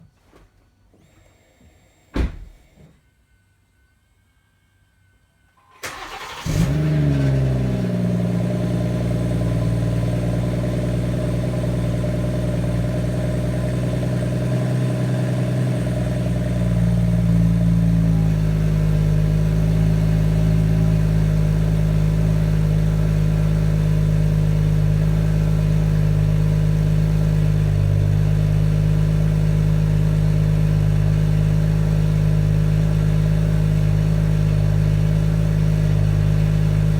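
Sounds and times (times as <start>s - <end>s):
car engine cranking: 5.8s - 12.4s
car engine idling: 5.8s - 36.9s.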